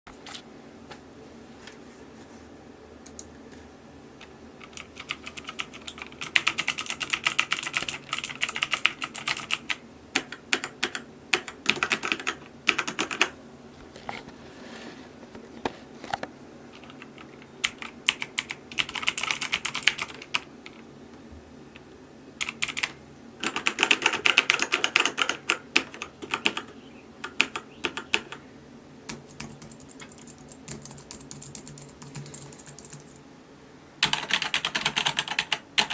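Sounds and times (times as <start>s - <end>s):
mechanical keyboard typing: 4.2s - 13.3s, 16.8s - 20.8s, 22.4s - 28.4s, 29.1s - 33.2s, 34.0s - 35.9s.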